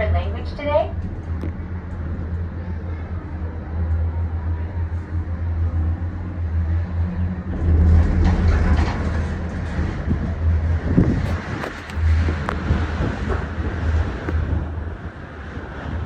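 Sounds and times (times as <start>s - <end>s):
gondola cabin hum and rumble: 0.0s - 16.0s
wind noise rushing: 5.2s - 16.0s.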